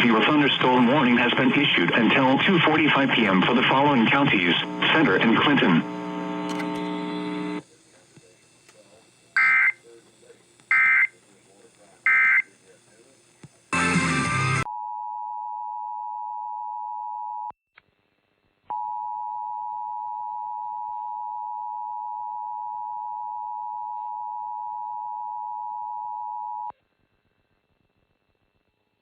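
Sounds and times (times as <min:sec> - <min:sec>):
harsh data noise burst: 0:00.0 - 0:14.7.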